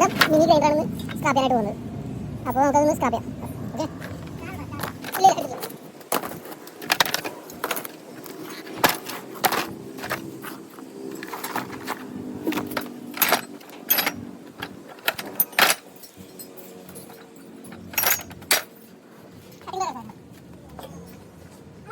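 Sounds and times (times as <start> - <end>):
metal clinks and knocks: 0.0 - 1.5, 2.9 - 19.7.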